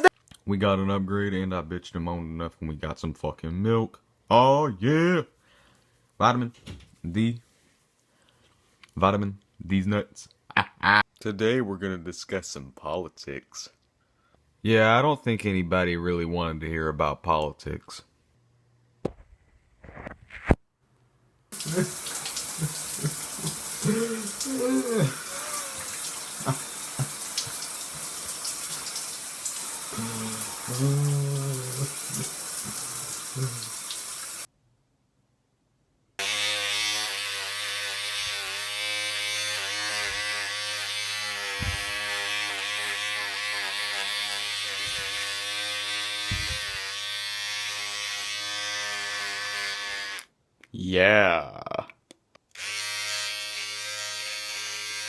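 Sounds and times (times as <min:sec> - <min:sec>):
tap water running into sink: 0:21.6 - 0:24.6, 0:25.7 - 0:30.6
electric shaver buzzing: 0:21.6 - 0:34.3, 0:36.2 - 0:50.3, 0:52.6 - 0:55.0.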